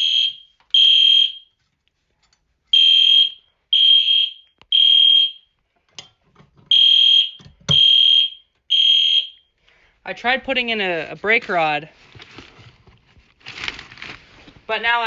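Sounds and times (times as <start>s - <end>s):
fire alarm horn beeps: 0.0s - 1.6s, 2.7s - 5.5s, 6.7s - 9.5s.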